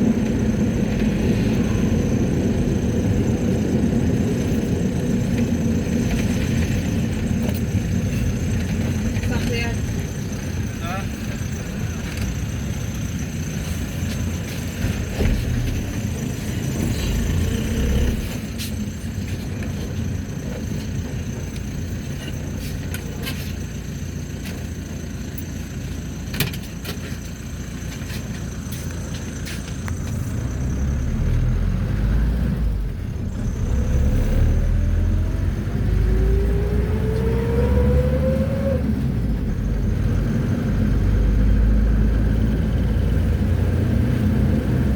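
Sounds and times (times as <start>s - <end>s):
engine and road rumble: 0.0s - 44.9s
rising whine: 28.7s - 43.8s.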